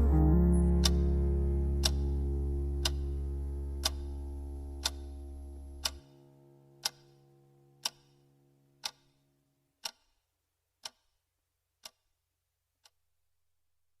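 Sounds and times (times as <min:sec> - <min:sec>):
held musical note: 0:00.0 - 0:05.8
clock ticking: 0:00.0 - 0:06.2, 0:06.8 - 0:09.2, 0:09.8 - 0:10.2, 0:10.8 - 0:11.2, 0:11.8 - 0:12.2.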